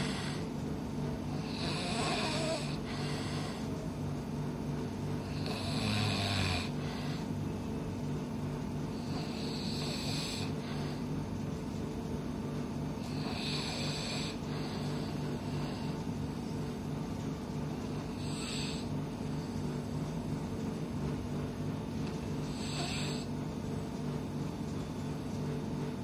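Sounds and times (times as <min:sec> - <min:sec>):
person snoring heavily: 0:00.0 - 0:00.5, 0:01.3 - 0:03.7, 0:05.2 - 0:07.3, 0:09.0 - 0:11.0, 0:13.0 - 0:16.0, 0:18.1 - 0:18.9, 0:22.5 - 0:23.3.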